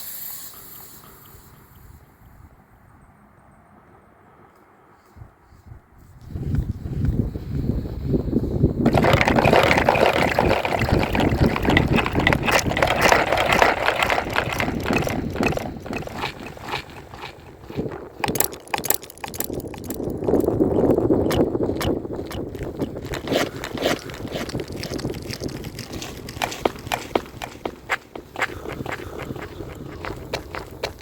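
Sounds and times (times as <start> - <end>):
water splashing and gurgling: 8.8 - 26.5.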